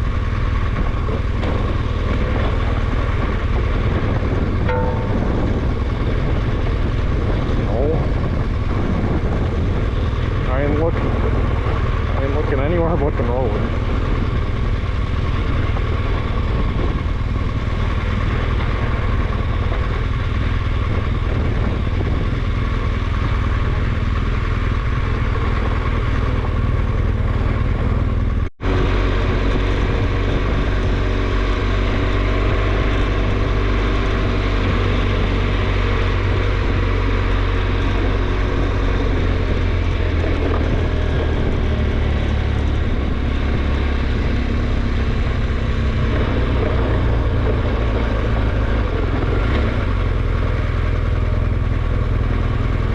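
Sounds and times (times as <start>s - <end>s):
motorcycle engine running: 0.0s - 52.9s.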